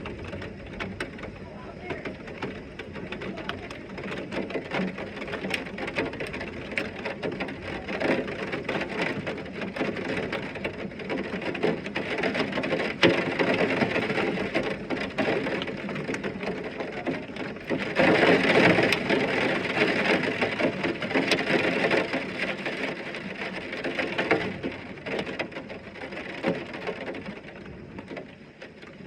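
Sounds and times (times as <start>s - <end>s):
heavy rain falling: 0.0s - 29.0s.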